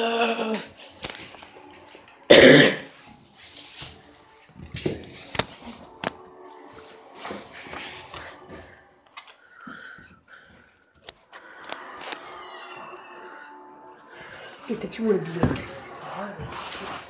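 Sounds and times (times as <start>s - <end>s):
person coughing: 2.3s - 2.9s.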